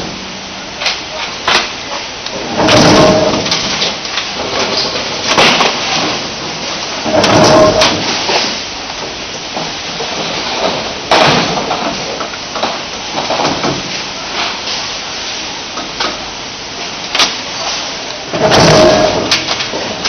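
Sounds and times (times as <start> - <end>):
steady hum: 0.0 - 20.0
knocks and clatter: 2.5 - 6.2, 7.1 - 8.5, 18.4 - 19.9
machinery hissing: 16.4 - 20.0.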